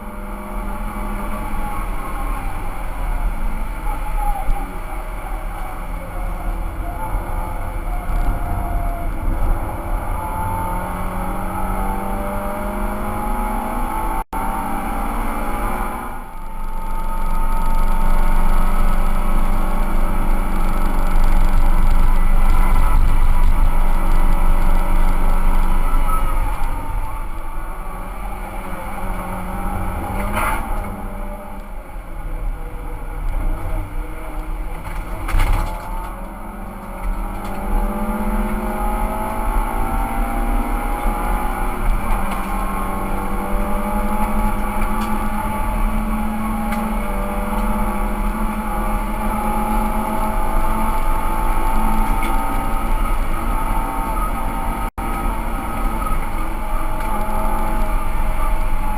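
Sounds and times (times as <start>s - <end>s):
car engine revving through gears: 0.0s - 58.9s.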